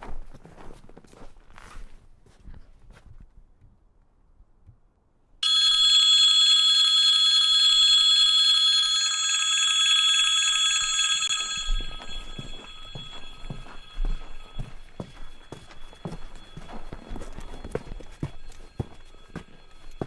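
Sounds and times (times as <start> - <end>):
electric bell ringing: 5.4 - 20.0
footsteps: 5.4 - 20.0.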